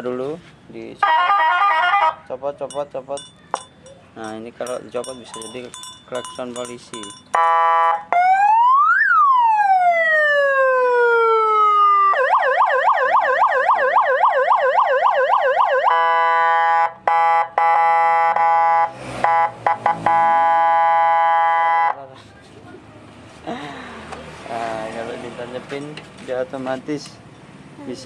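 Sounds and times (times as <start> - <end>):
electronic police siren: 7.4 - 22.0.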